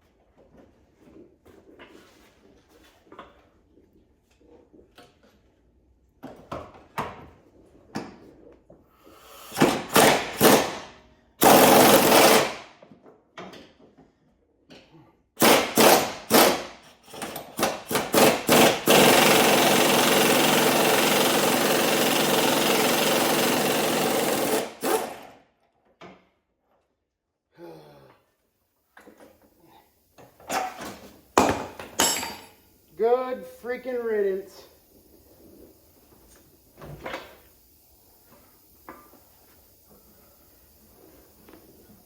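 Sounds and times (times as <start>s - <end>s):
impact wrench hammering: 9.6s - 12.7s, 15.4s - 25.3s.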